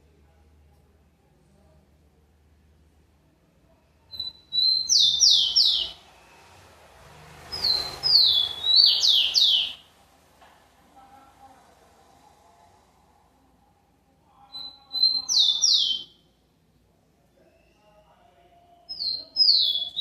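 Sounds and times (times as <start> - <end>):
sparrow singing whistled notes: 4.1 - 6.0, 7.5 - 9.9, 14.5 - 16.2, 18.9 - 20.0.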